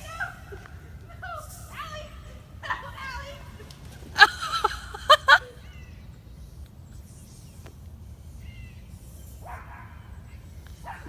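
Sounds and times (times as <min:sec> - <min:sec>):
faint bird chirps: 0:04.2 - 0:11.0.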